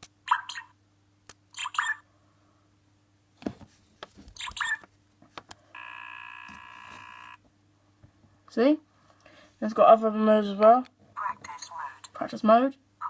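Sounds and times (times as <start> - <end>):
electronic buzzing whine: 5.7 - 7.5.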